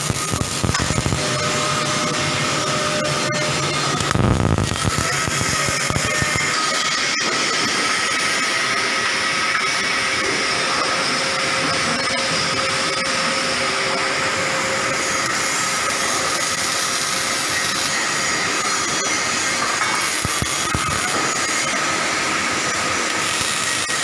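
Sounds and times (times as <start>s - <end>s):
welding robot hiss and buzz: 0.0s - 24.0s.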